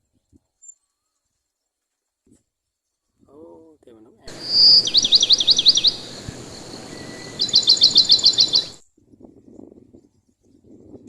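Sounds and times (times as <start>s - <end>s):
bird singing loudly: 4.3s - 8.8s
steady hiss: 4.3s - 8.8s.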